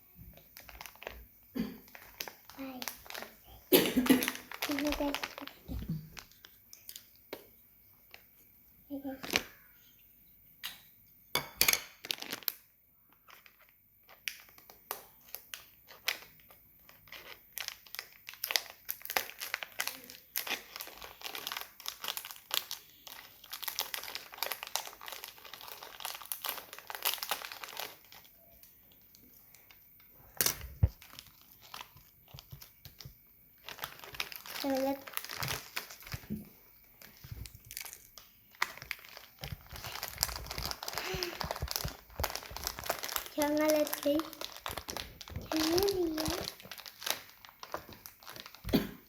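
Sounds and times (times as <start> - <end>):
crinkly packaging being torn open: 1.9 - 5.6, 12.0 - 12.6, 13.3 - 28.3, 30.4 - 36.3, 37.1 - 48.8.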